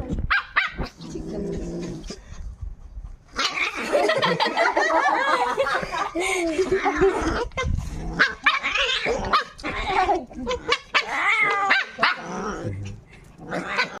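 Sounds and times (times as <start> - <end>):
animals crying out in fight: 13.5 - 14.0.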